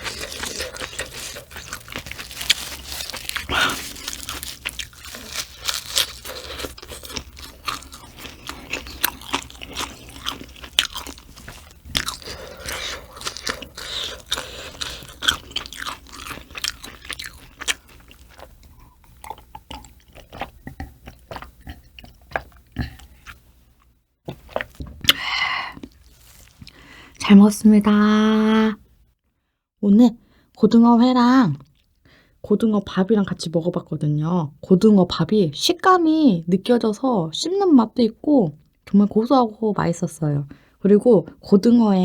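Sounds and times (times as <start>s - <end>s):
crunchy food chewing: 0.0s - 27.2s.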